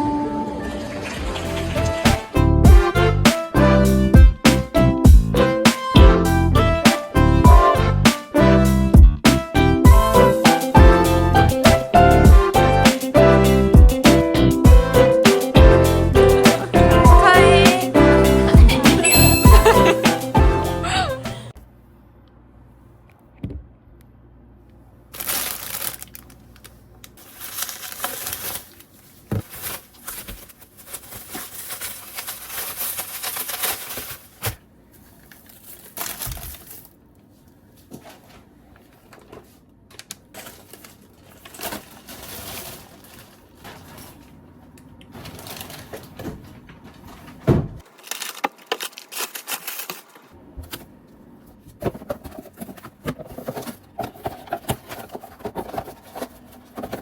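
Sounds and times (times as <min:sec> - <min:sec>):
rustling and handling noises: 0:25.1 - 0:57.0.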